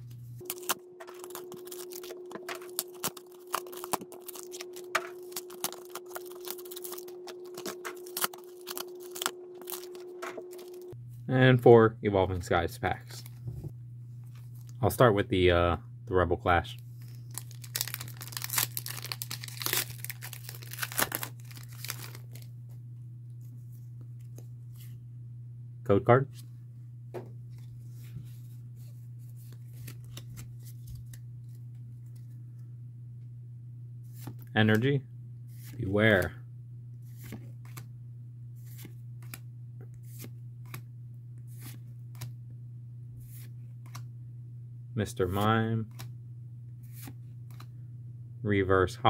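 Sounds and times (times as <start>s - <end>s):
steady low hum: 0.0s - 49.0s
foil wrapper tearing and crinkling: 0.4s - 10.8s, 17.0s - 22.5s
trading cards sliding off a pack: 46.8s - 47.7s.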